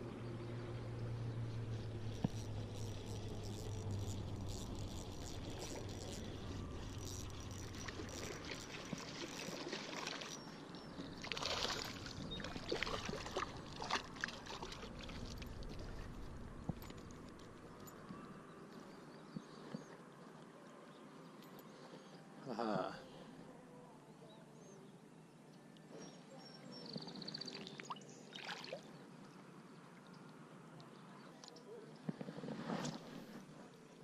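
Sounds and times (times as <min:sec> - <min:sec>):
low steady hum: 0:00.0 - 0:27.2
water splashing and trickling: 0:02.0 - 0:17.9, 0:27.5 - 0:29.0.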